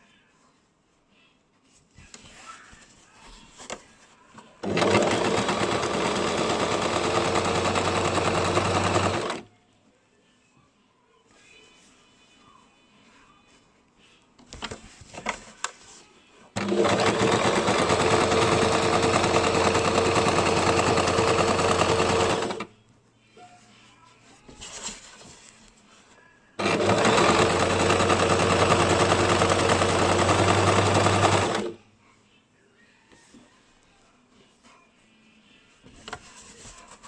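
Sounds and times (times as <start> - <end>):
sewing machine stitching: 4.6 - 9.4, 16.6 - 22.7, 26.6 - 31.8.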